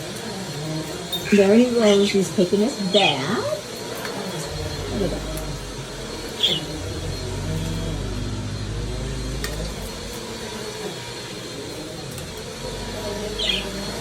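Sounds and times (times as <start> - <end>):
low hum: 4.4 - 14.0.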